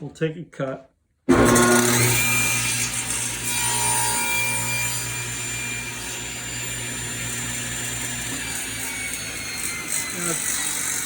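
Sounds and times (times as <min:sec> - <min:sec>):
table saw cutting wood: 0:01.3 - 0:11.0.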